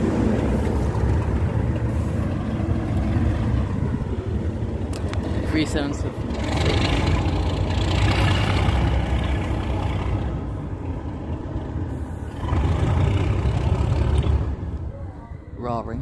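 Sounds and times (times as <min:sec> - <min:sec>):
diesel locomotive engine roaring: 0:00.0 - 0:16.0.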